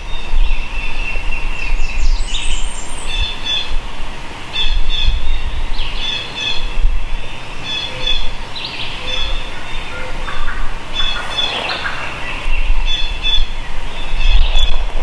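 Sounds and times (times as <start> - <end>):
birds calling: 5.8 - 14.8
low rumble: 10.9 - 13.8.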